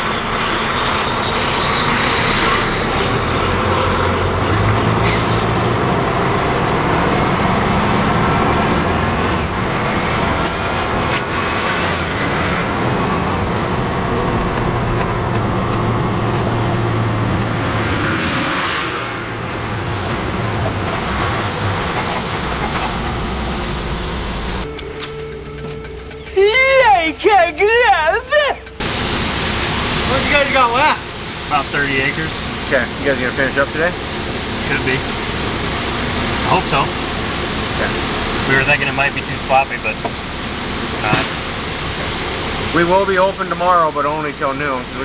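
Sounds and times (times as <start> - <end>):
truck engine running: 0.0 - 26.3, 28.6 - 45.0.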